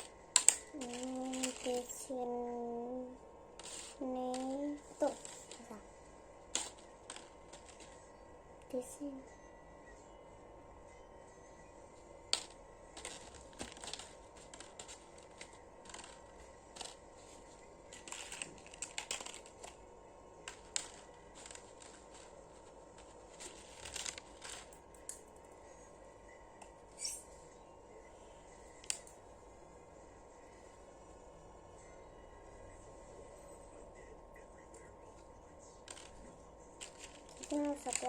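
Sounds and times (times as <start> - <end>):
plastic toy pieces clicking: 0.0 - 2.0, 3.6 - 5.8, 6.5 - 8.0, 12.3 - 17.0, 17.9 - 19.8, 20.5 - 25.3, 35.8 - 36.2, 36.8 - 38.0
packaging crinkling: 12.4 - 17.0, 17.9 - 19.8, 20.5 - 24.8, 36.8 - 38.0.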